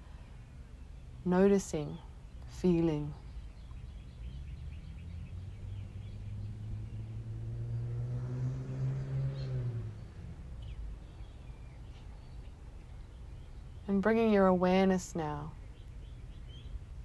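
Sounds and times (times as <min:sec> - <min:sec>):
passing vehicle engine drone: 0:04.2 - 0:12.2.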